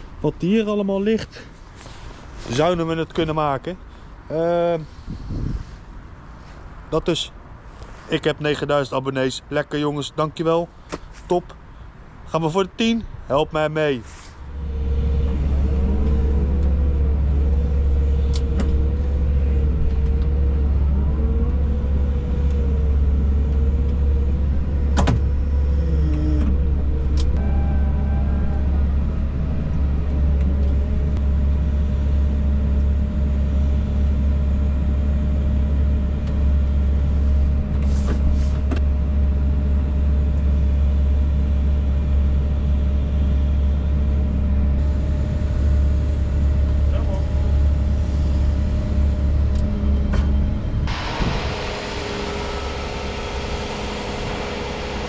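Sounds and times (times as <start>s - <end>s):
heavy vehicle engine humming: 14.0s - 55.0s
wavering whine: 14.4s - 37.6s, 42.6s - 55.0s.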